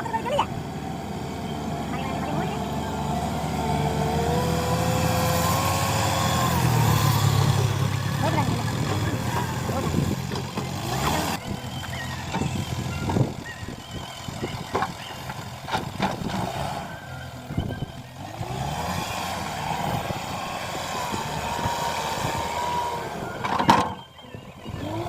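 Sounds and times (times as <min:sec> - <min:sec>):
diesel engine running: 0:00.0 - 0:25.0
knocks and clanks: 0:08.6 - 0:11.2, 0:14.7 - 0:16.5, 0:23.4 - 0:24.0.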